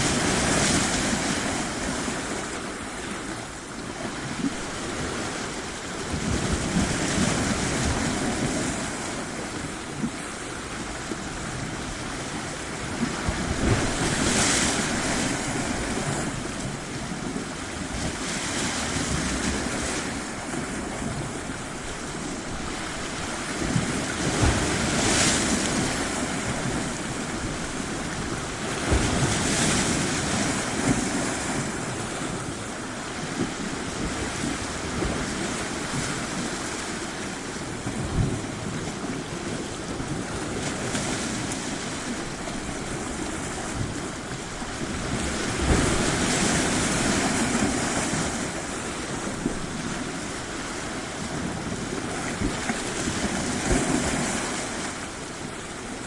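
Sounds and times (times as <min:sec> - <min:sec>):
ocean surf breaking on shore: 0:00.0 - 0:56.0.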